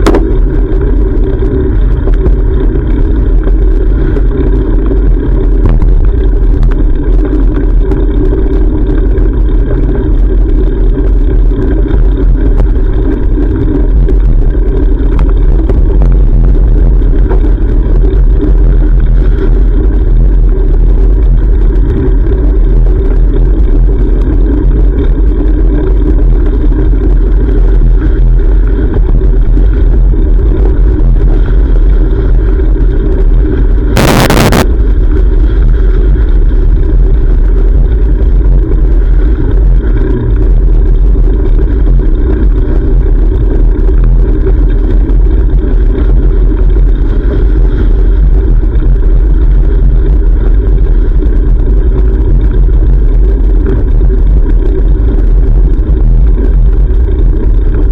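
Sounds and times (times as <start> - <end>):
sudden burst of noise: 0.0 - 7.6, 29.0 - 41.6
wind buffeting microphone: 0.0 - 57.9.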